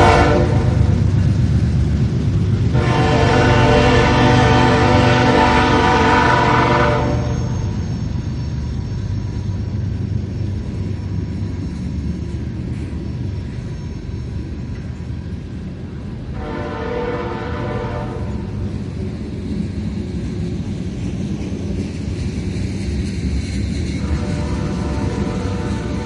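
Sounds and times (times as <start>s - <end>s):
train horn chord: 0.0s - 1.0s, 2.7s - 7.6s, 16.3s - 18.5s, 24.0s - 26.0s
moving train rumble: 0.0s - 26.0s.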